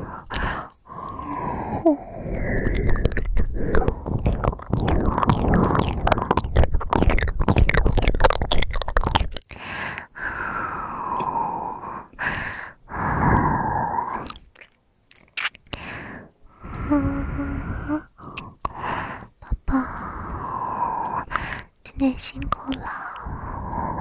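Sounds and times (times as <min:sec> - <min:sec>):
heavy voiced breaths: 0:00.0 - 0:05.8, 0:09.5 - 0:14.3, 0:15.7 - 0:21.8, 0:22.8 - 0:24.0
wet mouth smacking and clicking: 0:02.3 - 0:10.1, 0:14.1 - 0:15.8, 0:16.6 - 0:20.0, 0:20.7 - 0:23.8.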